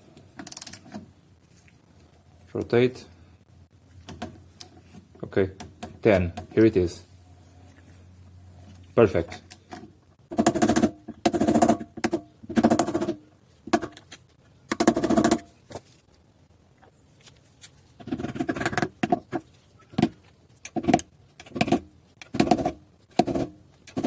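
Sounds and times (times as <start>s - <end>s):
sharp clicks and knocks: 4.0s - 4.8s.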